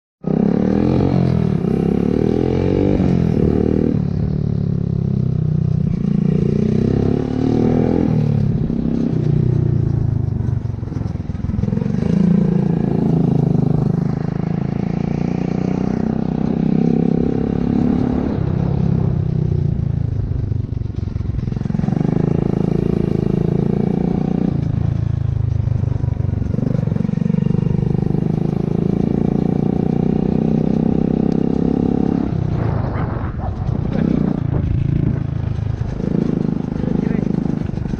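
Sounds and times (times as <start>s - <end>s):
vehicle engine running: 32.3s - 37.9s.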